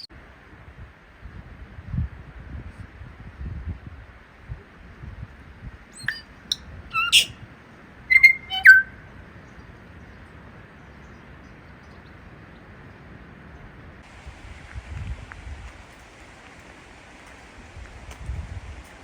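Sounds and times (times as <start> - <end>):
bird singing clicks and whistles: 6.0 - 6.2, 6.9 - 7.3, 8.1 - 8.9
background hiss: 14.0 - 19.0.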